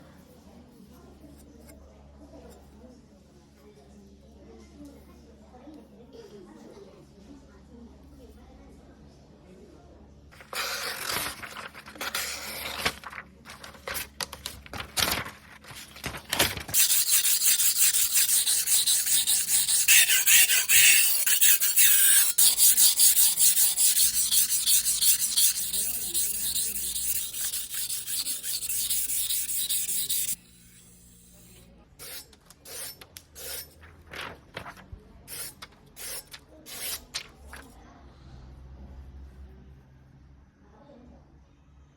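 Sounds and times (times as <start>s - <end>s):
knife scraping on whetstone: 16.8s - 33.8s, 35.3s - 37.1s.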